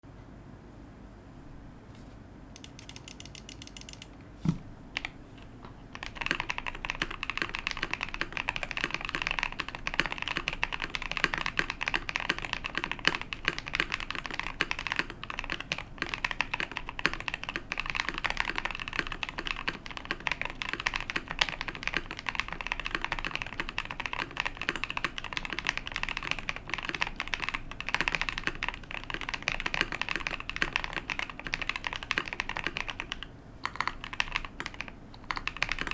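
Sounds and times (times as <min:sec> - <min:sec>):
typing on mechanical keyboard: 0:02.6 - 0:04.1, 0:05.9 - 0:35.9.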